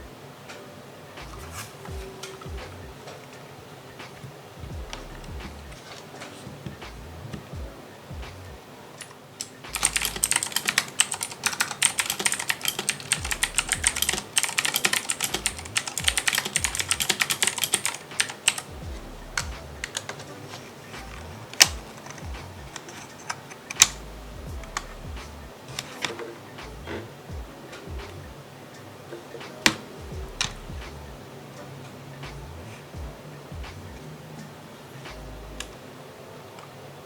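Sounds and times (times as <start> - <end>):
mechanical keyboard typing: 9.0 - 18.8, 19.4 - 25.0.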